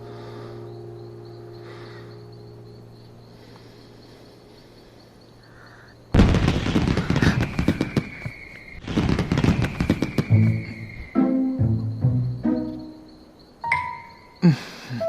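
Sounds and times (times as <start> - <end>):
gentle pitched music: 0.0 - 5.4, 10.3 - 15.0
fireworks bursting: 6.1 - 11.1
fireworks crackling: 6.1 - 11.1
high whistling tone: 7.3 - 12.9.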